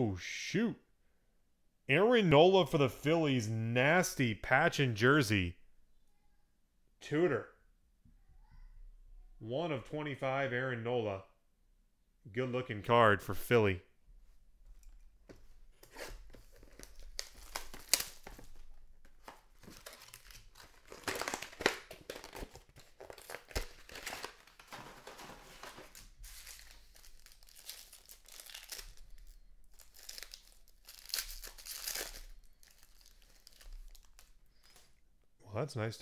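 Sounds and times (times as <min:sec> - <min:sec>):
packaging crinkling and tearing: 0:15.8 - 0:34.9.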